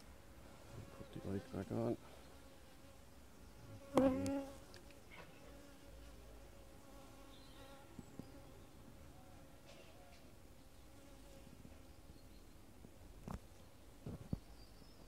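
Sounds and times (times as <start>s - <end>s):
honeybees buzzing: 3.7s - 6.0s.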